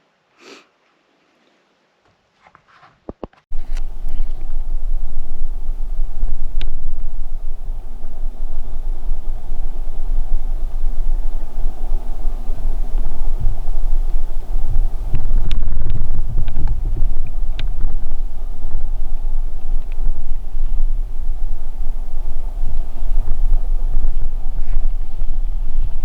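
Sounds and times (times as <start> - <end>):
wind buffeting microphone: 3.5 - 26.0.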